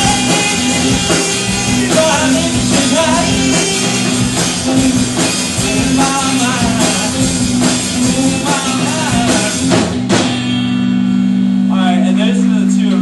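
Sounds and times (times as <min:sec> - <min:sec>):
person singing: 0:00.0 - 0:09.9
live rock band playing: 0:00.0 - 0:13.0.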